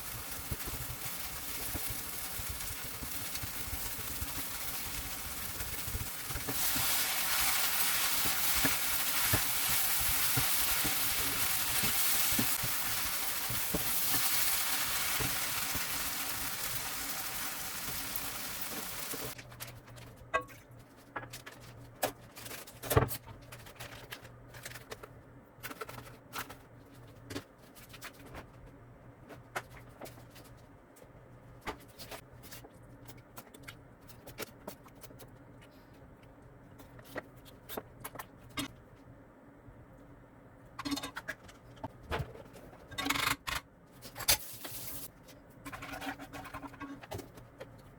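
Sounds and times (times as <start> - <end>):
food sizzling in a frying pan: 0.0 - 19.4.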